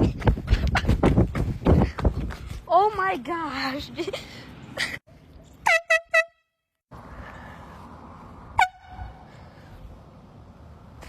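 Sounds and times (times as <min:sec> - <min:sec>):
air horn blasts: 0:05.6 - 0:06.6, 0:08.6 - 0:09.2.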